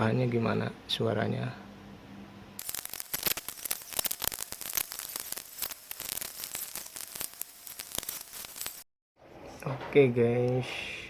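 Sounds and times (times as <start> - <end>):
crackling static: 2.6 - 8.9.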